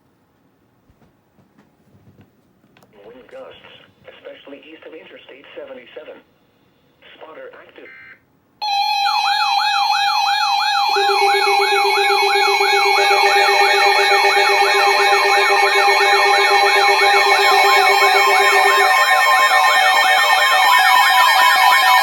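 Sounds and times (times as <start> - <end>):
electronic siren sweep: 8.6 - 22.0
steady alert tones: 8.6 - 22.0.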